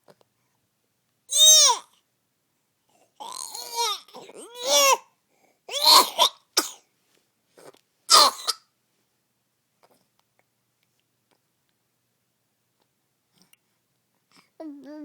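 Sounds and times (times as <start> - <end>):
person coughing harshly: 5.7 - 6.8, 8.1 - 8.6.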